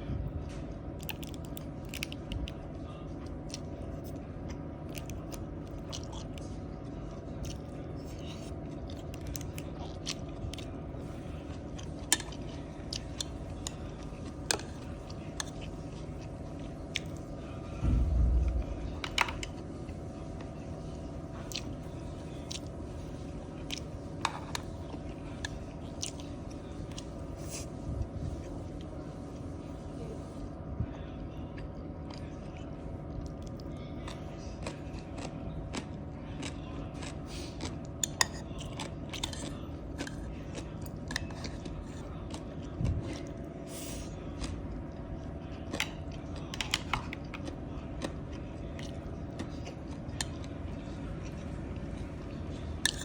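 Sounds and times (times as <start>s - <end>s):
steady low hum: 0.0s - 53.0s
person chewing food: 1.0s - 29.5s, 31.5s - 53.0s
low thump: 17.8s - 18.8s.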